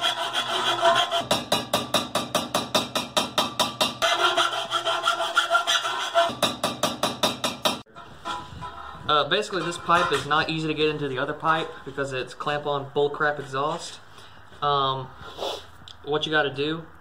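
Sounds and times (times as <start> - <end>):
hand file rasping on metal pipe: 0.0 - 1.5, 3.8 - 6.6.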